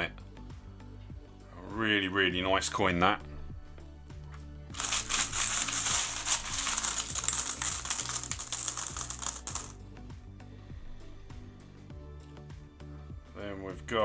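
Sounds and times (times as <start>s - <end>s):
coins jingling and clinking: 4.7s - 9.8s.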